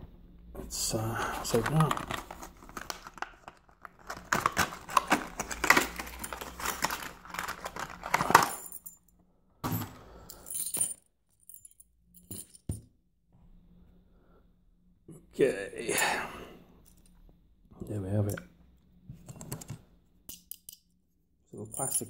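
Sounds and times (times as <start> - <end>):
plastic packaging crinkling: 1.2 - 8.7
padlock and keys rattling: 1.5 - 9.1, 10.3 - 12.7, 19.3 - 20.8.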